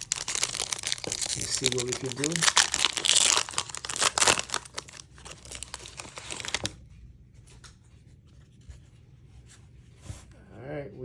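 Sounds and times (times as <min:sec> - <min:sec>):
wrapper tearing and crinkling: 0:00.0 - 0:06.8
cards rustling and ticking: 0:00.0 - 0:06.9.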